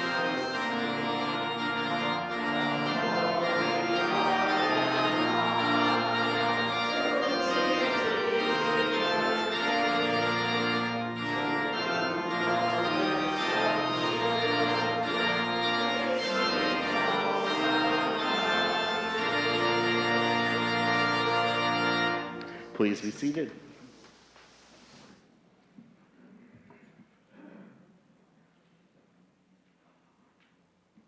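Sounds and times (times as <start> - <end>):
church organ playing hymn: 0.0 - 23.6.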